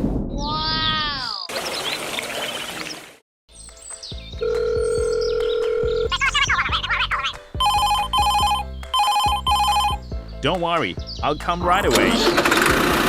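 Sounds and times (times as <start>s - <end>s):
background music: 3.5s - 13.0s
telephone ringing: 4.4s - 6.2s, 7.6s - 10.0s.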